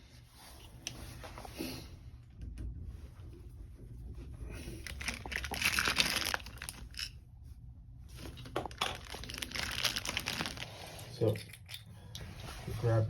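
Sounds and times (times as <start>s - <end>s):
wrapping crinkling and rustling: 4.8s - 7.1s, 8.1s - 11.4s.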